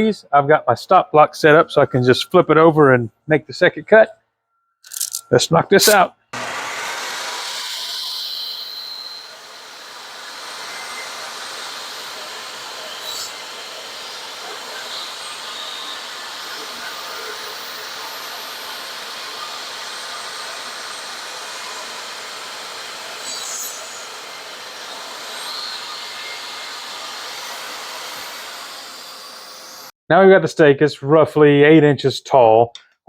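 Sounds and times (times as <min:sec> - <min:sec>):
table saw cutting wood: 0:05.8 - 0:29.9.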